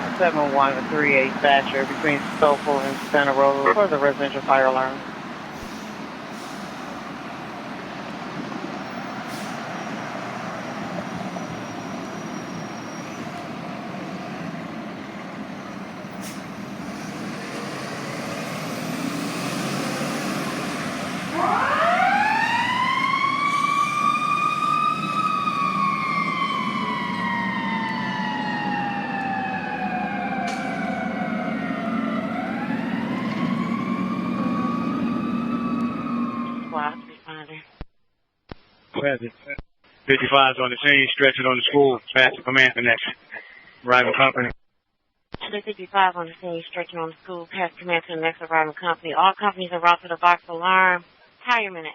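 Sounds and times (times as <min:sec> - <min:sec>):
fire engine driving: 0:00.0 - 0:37.1
fire engine siren wailing: 0:00.0 - 0:37.1.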